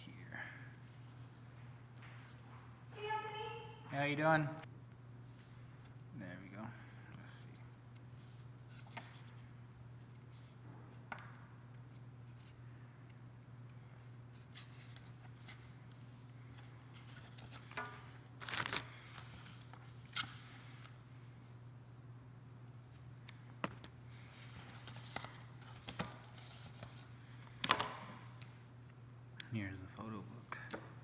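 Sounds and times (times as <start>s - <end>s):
steady low hum: 0.0s - 31.0s
paper and plastic rustling: 14.4s - 20.9s.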